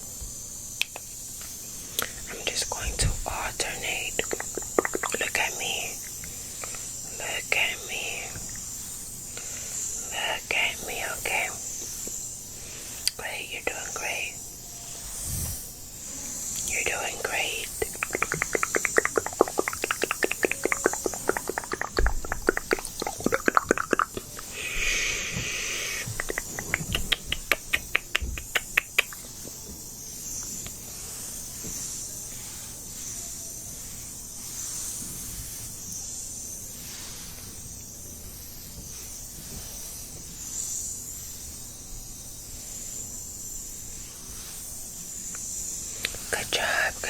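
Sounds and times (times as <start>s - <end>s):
breathy hissing: 0.7s - 47.0s
wet tongue and mouth clicks: 0.8s - 1.1s, 2.0s - 5.9s, 16.6s - 29.3s.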